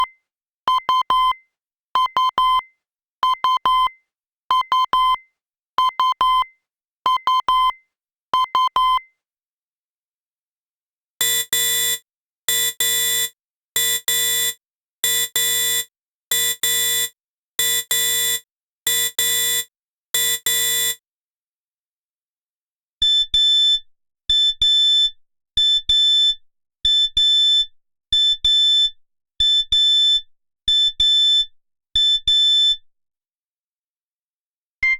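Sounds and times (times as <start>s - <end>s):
digital alarm clock beeping: 11.2s - 21.0s.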